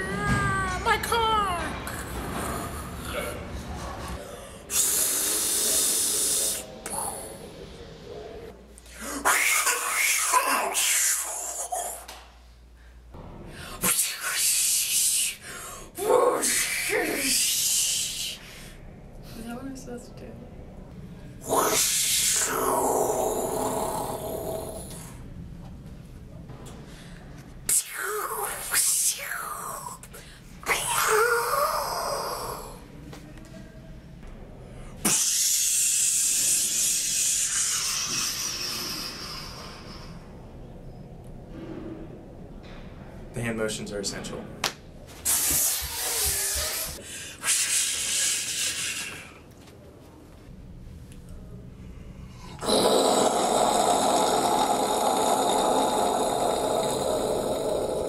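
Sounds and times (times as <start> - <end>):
person making mouth sound effect: 9.0 - 12.3, 35.0 - 40.2, 52.6 - 58.0
person imitating a rushing roar: 21.4 - 25.1, 52.6 - 58.0
loud hiss: 45.2 - 46.9.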